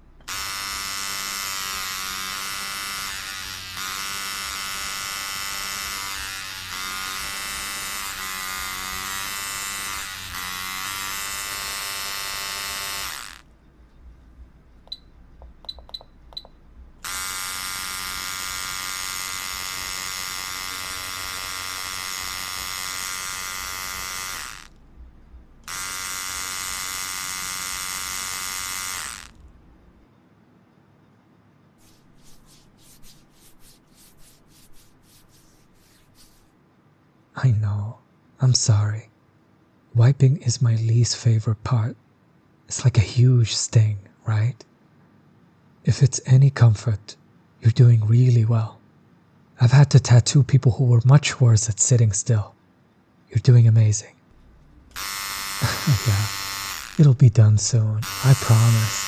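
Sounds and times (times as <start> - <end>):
tattoo machine buzzing: 0.0 - 13.5, 14.8 - 24.8, 25.6 - 29.5, 31.8 - 36.5, 54.4 - 57.2, 58.0 - 59.0.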